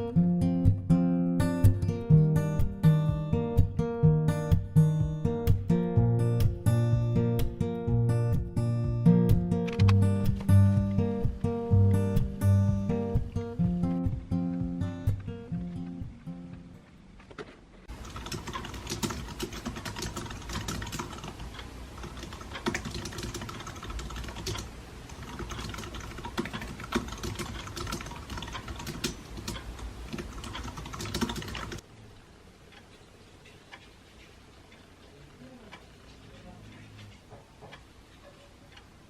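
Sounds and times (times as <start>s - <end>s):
keyboard typing clicks: 18.0s - 31.8s.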